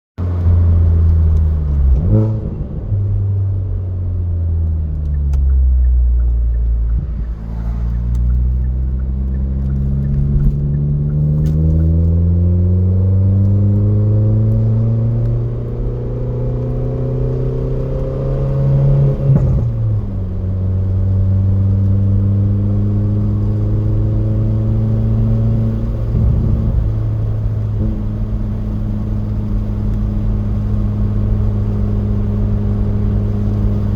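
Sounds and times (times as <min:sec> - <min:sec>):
car engine running: 0:00.2 - 0:33.9.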